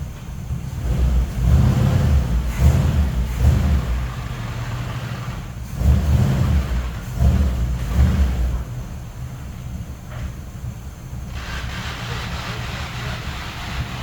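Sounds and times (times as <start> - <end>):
pickup engine revving: 0.0 - 9.5, 11.2 - 14.0.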